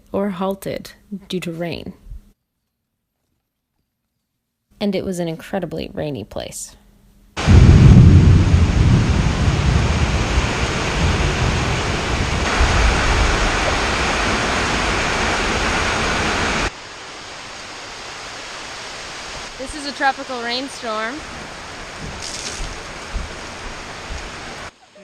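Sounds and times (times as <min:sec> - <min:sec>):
deep rumble: 0:07.4 - 0:16.7, 0:21.2 - 0:24.7
heavy rain downpour: 0:07.4 - 0:25.0.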